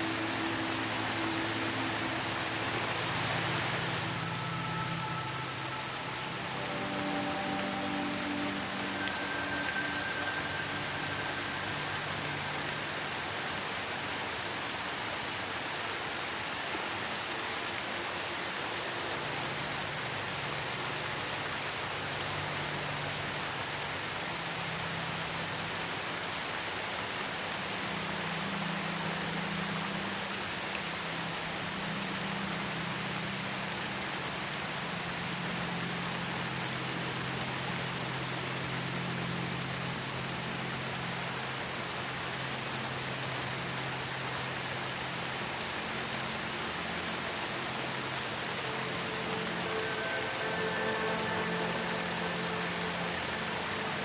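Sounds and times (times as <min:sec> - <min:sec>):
low ambient music tones: 0:00.0 - 0:54.0
steady rain: 0:00.0 - 0:54.0.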